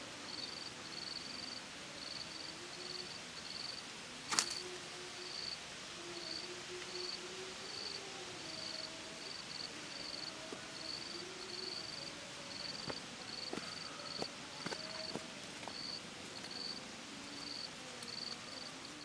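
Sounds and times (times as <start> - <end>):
crickets chirping: 0.0 - 19.0
faint low wavering tone: 0.0 - 19.0
outdoor ambience hiss: 0.0 - 19.0
sharp click: 4.3 - 4.6.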